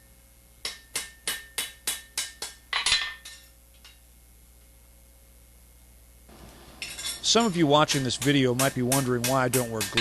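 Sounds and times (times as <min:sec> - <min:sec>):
hammer striking iron on anvil: 0:00.6 - 0:03.5, 0:06.8 - 0:10.0.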